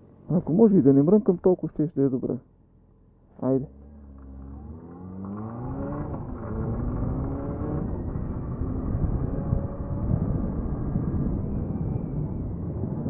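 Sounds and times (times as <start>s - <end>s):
motorcycle engine accelerating: 3.7s - 13.0s
rushing wind: 5.6s - 13.0s.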